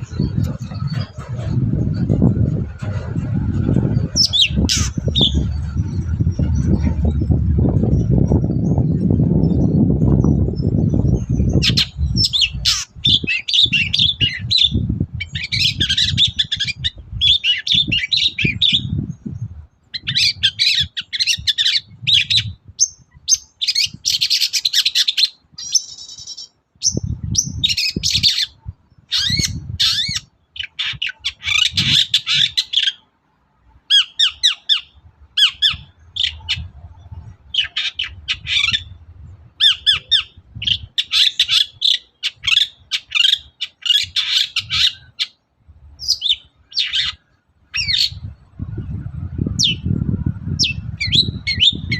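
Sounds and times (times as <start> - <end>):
low rumble: 0.0 - 12.7.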